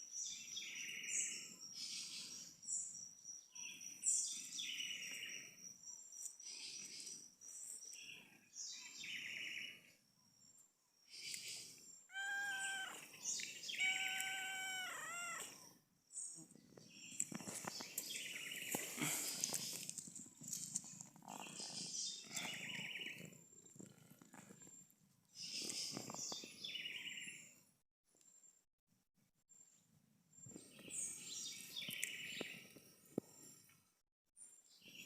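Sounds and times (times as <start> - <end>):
wren chirping song: 11.0 - 19.8
animal wavering calls: 12.1 - 13.1, 13.7 - 15.6.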